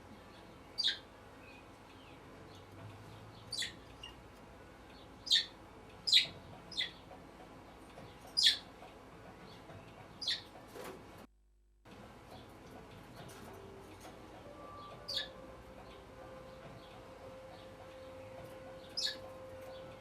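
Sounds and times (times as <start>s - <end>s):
budgerigar chirping: 0.8s - 1.6s, 3.3s - 4.2s, 5.2s - 7.0s, 8.3s - 8.7s, 10.2s - 10.5s, 14.8s - 15.4s, 18.8s - 19.2s.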